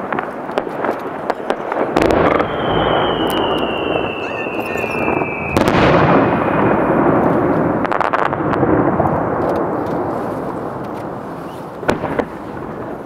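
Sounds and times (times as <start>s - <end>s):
firework burst: 0.0s - 13.0s
firework crackles: 0.0s - 13.0s
rumbling echo of fireworks: 0.0s - 13.0s
firework whistle sliding down: 2.2s - 5.8s.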